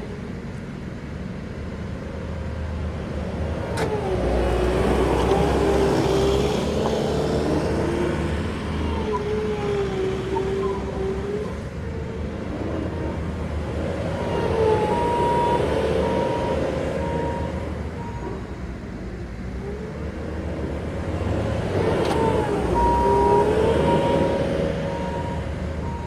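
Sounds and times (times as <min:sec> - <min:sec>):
diesel engine working under load: 0:00.0 - 0:26.0
hydraulic whine: 0:03.0 - 0:26.0.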